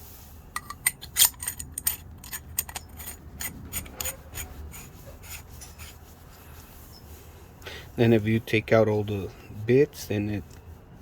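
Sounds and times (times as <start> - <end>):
screwdriver bits clinking: 0.6 - 5.9.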